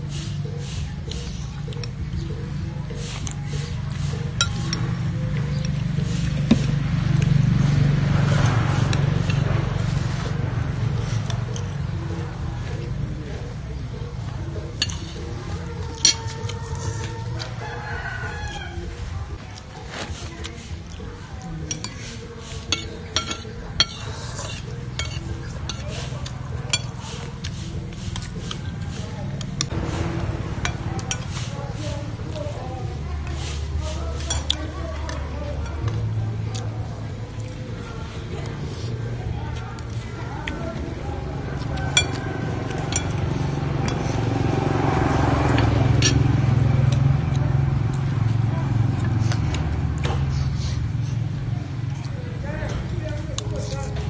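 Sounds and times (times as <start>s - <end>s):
low engine hum: 0.0s - 54.0s
spoons clinking against bowls: 3.9s - 4.8s, 14.8s - 17.2s, 21.6s - 28.7s, 30.6s - 31.5s, 33.8s - 34.8s, 41.7s - 44.2s.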